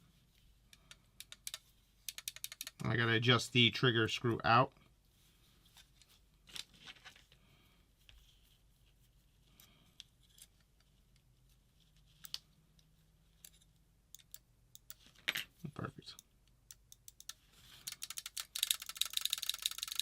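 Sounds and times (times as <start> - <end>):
small tool clicks and scraping: 13.4 - 15.0.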